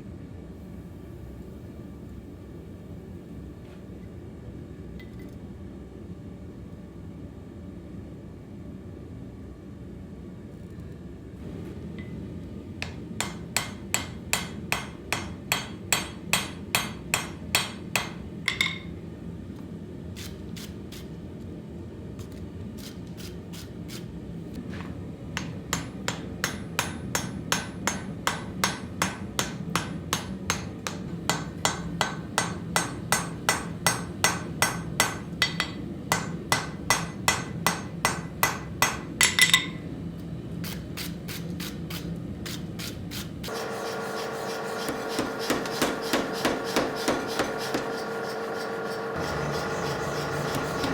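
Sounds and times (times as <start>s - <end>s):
hammer striking steel on anvil: 12.8s - 18.9s, 25.4s - 39.8s, 43.5s - 50.9s.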